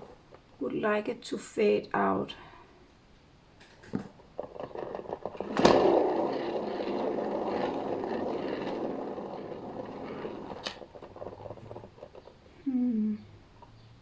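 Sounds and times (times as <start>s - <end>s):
paint spinner rolling rumble: 3.9s - 14.0s.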